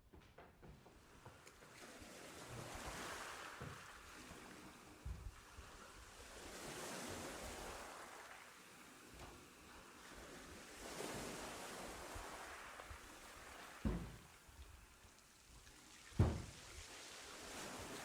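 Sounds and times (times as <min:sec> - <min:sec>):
ocean waves washing in: 0:01.7 - 0:18.0
low thump: 0:13.8 - 0:14.3, 0:16.2 - 0:16.6.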